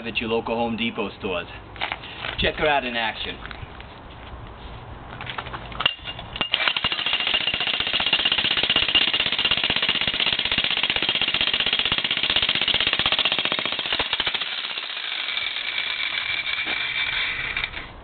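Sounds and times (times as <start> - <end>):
breaker hammer hammering concrete: 6.4 - 17.2.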